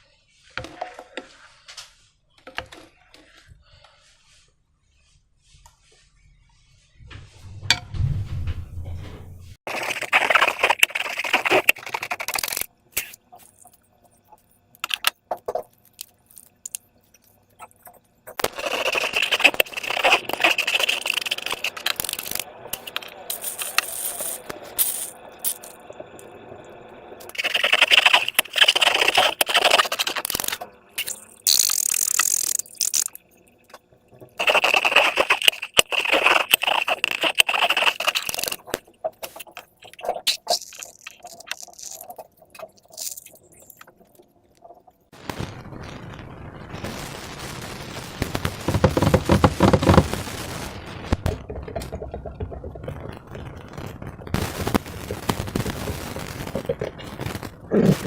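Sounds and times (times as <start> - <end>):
balloons and slime crackling: 9.6 - 13.6, 17.6 - 25.8, 27.2 - 33.3, 34.3 - 44.0, 46.6 - 58.0.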